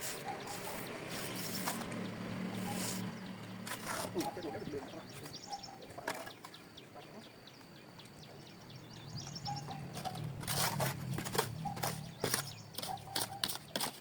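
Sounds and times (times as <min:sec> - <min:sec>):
sharp strikes or scrapes: 0:00.0 - 0:01.9
birds chirping: 0:00.0 - 0:14.0.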